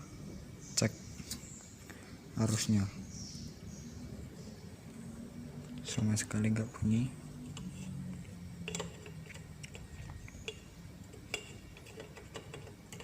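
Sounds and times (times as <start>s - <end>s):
faint low hum: 0.0s - 13.0s.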